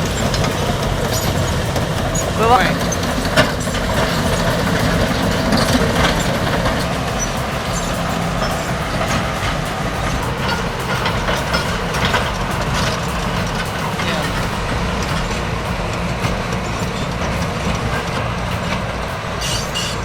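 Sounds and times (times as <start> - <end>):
bulldozer diesel engines running: 0.0 - 20.0.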